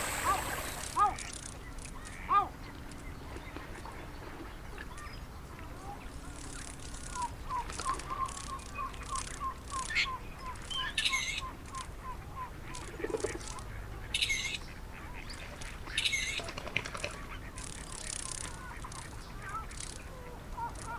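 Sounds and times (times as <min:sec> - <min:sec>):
harsh squawking bird calls: 0:00.0 - 0:01.2
sharp ticks: 0:06.4 - 0:10.7.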